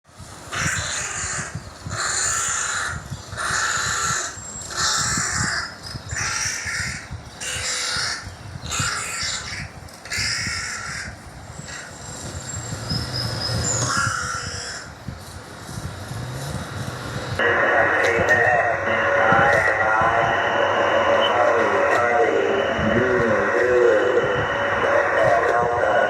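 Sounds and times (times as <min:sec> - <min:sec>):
bird giving harsh calls: 0:00.5 - 0:15.0.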